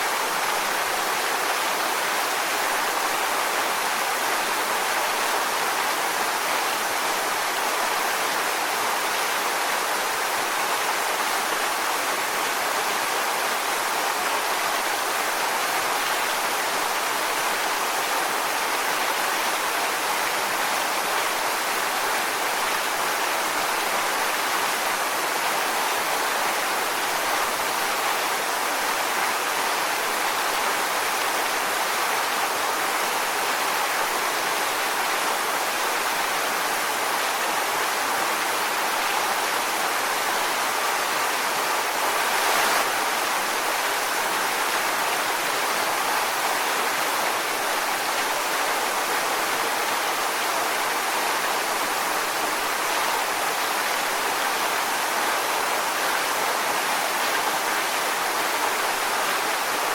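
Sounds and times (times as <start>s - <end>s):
waterfall rushing onto rocks: 0.0s - 59.9s.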